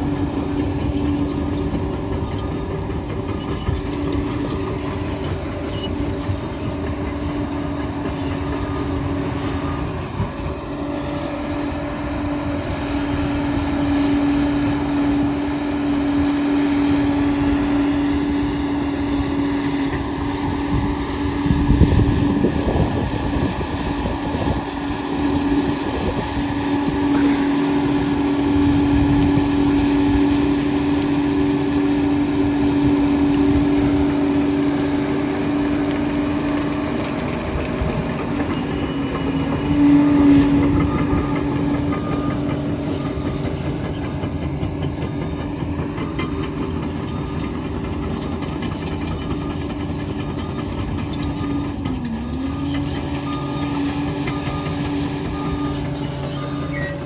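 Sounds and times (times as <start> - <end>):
bulldozer diesel engine running: 0.0 - 57.0.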